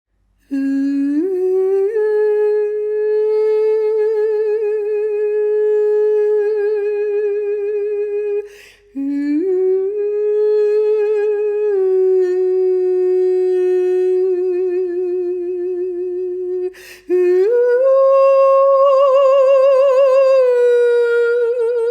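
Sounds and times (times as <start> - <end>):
person humming sustained notes: 0.5 - 21.9.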